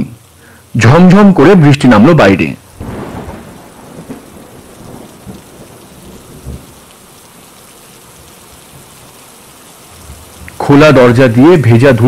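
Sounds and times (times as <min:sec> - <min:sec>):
heavy rain pouring: 0:00.0 - 0:12.0
thunder rumbling: 0:02.7 - 0:11.2.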